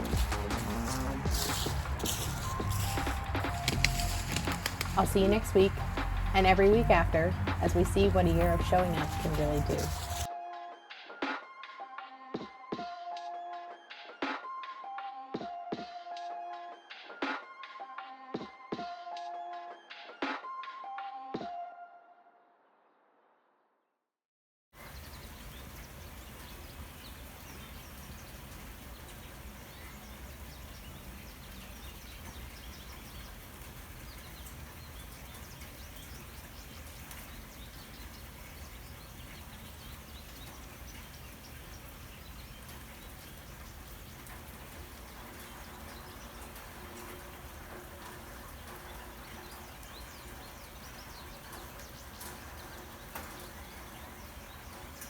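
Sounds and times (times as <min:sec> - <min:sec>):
distant birds chirping: 0:00.0 - 0:10.3, 0:24.8 - 0:55.0
outdoor background noise: 0:00.0 - 0:10.3, 0:24.8 - 0:55.0.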